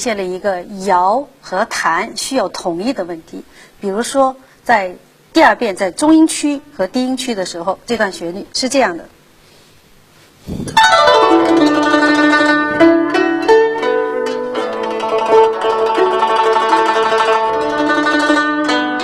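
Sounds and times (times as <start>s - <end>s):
guzheng melody: 10.5s - 19.0s.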